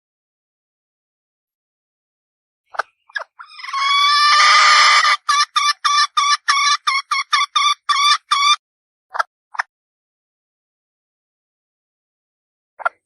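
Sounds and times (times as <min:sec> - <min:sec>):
hen calling and clucking: 0:02.8 - 0:08.6.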